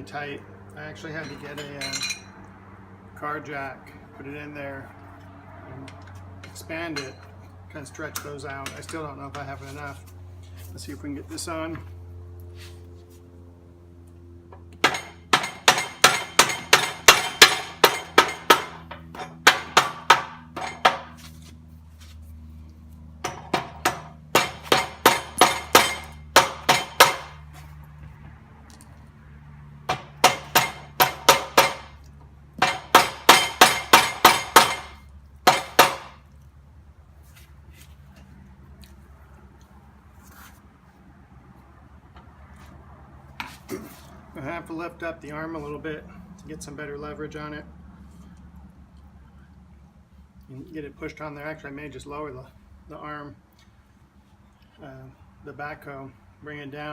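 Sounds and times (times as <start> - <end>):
steady low hum: 0.0 - 56.9
hammer striking steel: 14.8 - 21.2, 23.2 - 27.4, 29.9 - 32.0, 32.6 - 36.2.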